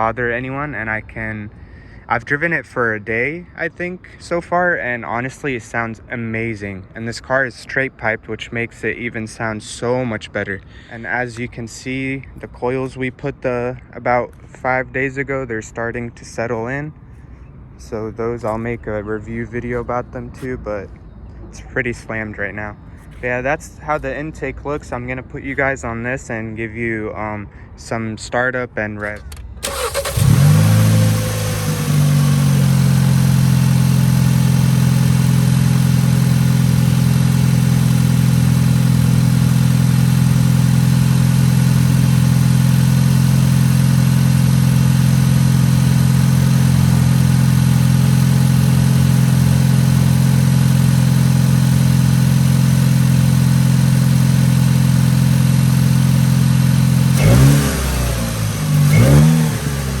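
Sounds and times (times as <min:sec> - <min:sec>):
car engine starting and idling: 0:29.0 - 1:00.0
engine revving: 0:29.6 - 1:00.0.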